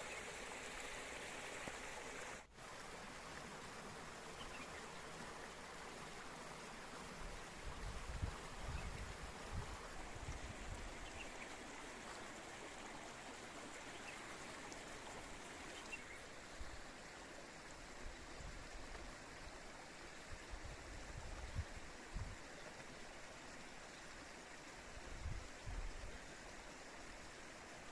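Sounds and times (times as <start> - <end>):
spring water running: 0.0 - 21.6.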